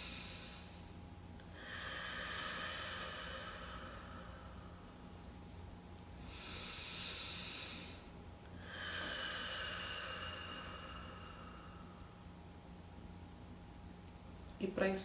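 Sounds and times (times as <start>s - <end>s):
person breathing deeply: 0.0s - 12.5s.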